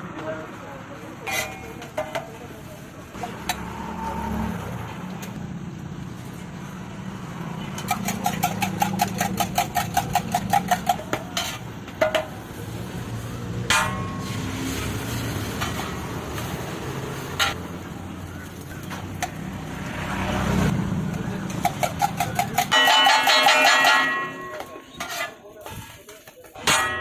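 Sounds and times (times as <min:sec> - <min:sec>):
traffic noise: 0:00.0 - 0:27.0
metal utensil chopping on griddle: 0:01.2 - 0:02.4, 0:07.6 - 0:12.5, 0:13.6 - 0:16.5, 0:17.4 - 0:17.6, 0:21.1 - 0:27.0.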